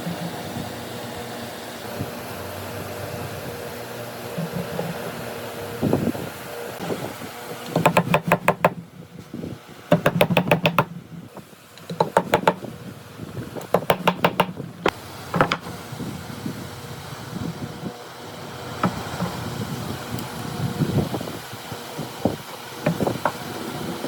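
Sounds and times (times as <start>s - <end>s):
steady hum: 0.0s - 24.0s
mallet tapping chisel into wood: 7.7s - 8.8s, 9.9s - 10.9s, 11.9s - 12.6s, 13.7s - 14.6s.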